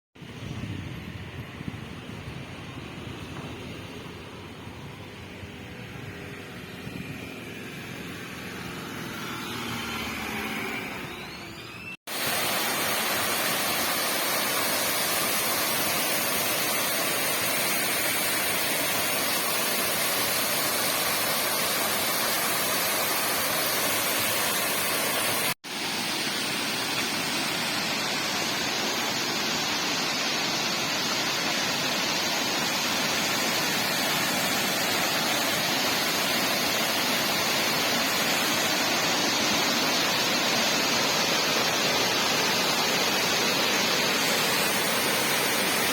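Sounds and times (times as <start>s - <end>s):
waterfall rushing: 12.1s - 45.9s.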